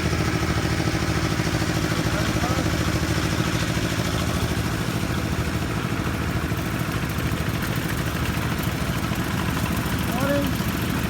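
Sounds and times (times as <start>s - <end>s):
small engine droning: 0.0s - 11.0s.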